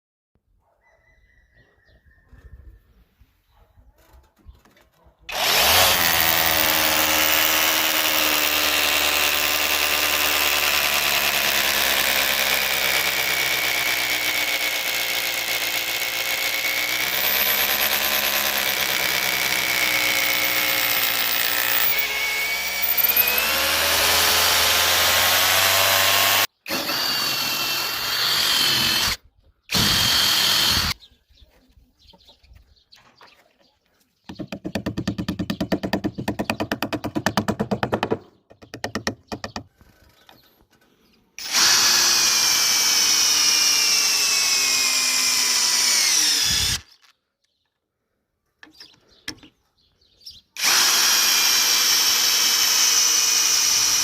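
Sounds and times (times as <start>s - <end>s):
cordless drill motor whine: 5.3s - 31.0s, 41.4s - 47.1s, 50.6s - 54.0s.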